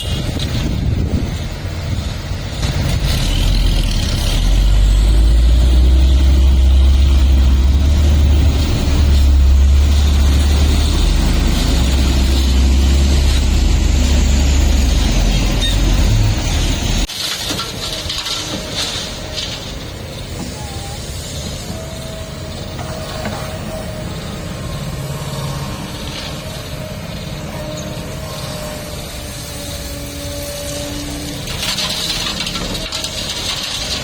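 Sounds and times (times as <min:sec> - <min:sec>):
diesel engine droning: 0:00.0 - 0:34.0.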